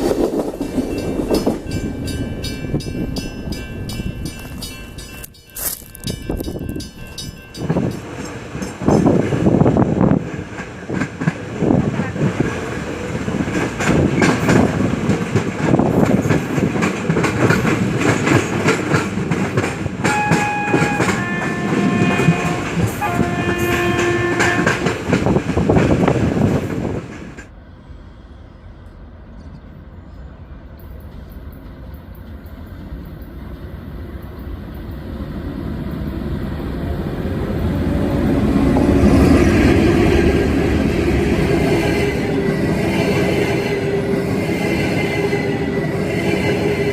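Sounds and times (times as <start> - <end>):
train wheels clattering: 0.0 - 27.5
train horn blasts: 20.0 - 25.2.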